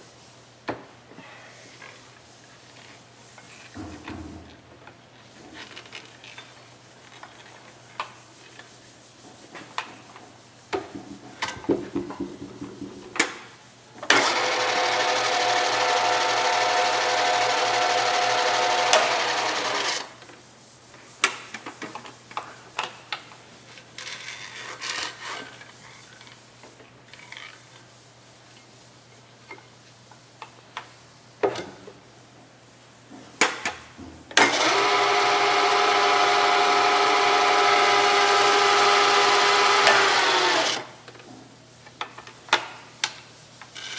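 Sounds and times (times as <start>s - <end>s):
mill motor humming and whining: 14.2s - 20.1s, 34.5s - 40.9s.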